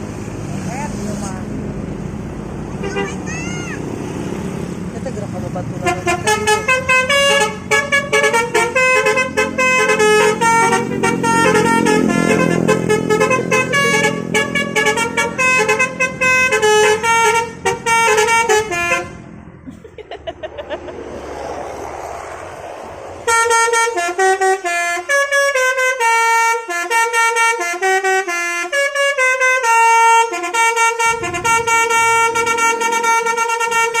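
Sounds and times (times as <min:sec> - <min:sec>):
road noise: 0:00.0 - 0:34.0
multi-tone air horns melody: 0:05.8 - 0:19.4, 0:23.3 - 0:34.0.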